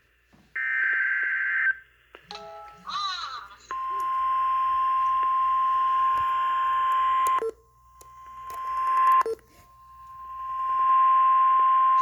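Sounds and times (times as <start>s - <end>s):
steady alarm tone: 3.7s - 7.5s, 8.1s - 12.0s.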